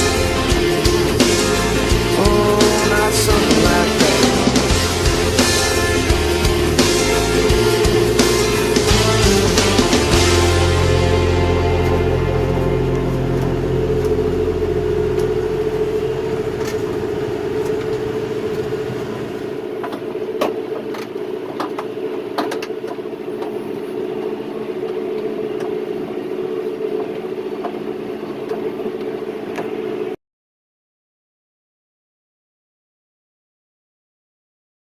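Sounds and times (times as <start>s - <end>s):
music: 0.0s - 17.5s
tractor diesel engine running: 0.0s - 29.7s.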